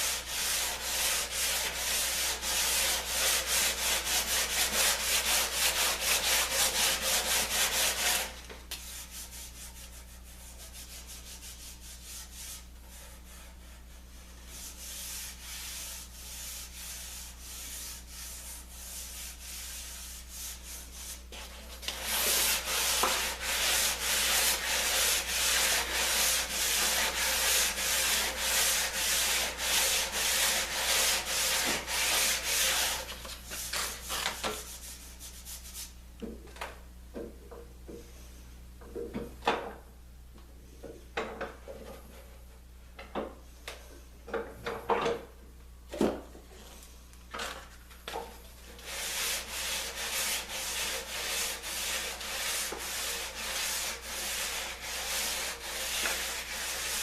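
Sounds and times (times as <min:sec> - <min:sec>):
hand sanding wood: 0:00.0 - 0:36.0, 0:48.7 - 0:57.0.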